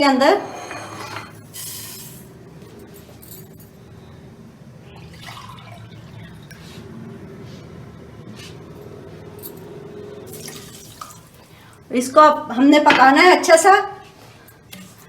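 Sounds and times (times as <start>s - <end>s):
water pouring into a pot: 5.0s - 6.6s, 10.3s - 11.4s.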